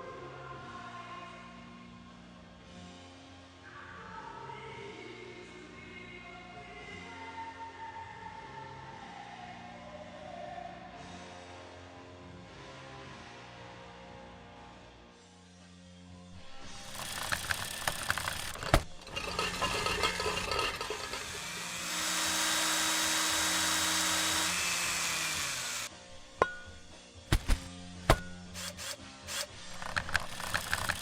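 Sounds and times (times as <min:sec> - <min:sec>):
scraping and grinding: 0:16.4 - 0:31.0
sharp clicks and knocks: 0:16.4 - 0:31.0.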